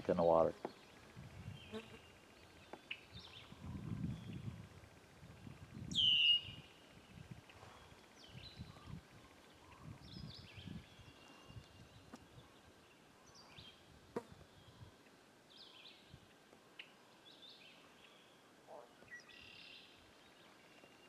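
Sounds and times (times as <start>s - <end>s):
bird chirping: 0.0s - 4.6s, 5.4s - 14.9s, 19.0s - 21.0s
quiet lake ambience: 0.0s - 21.0s.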